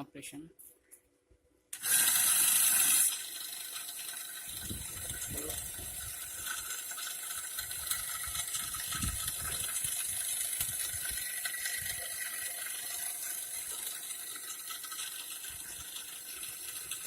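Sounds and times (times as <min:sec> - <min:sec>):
pneumatic machine hissing and whirring: 0:01.8 - 0:03.3.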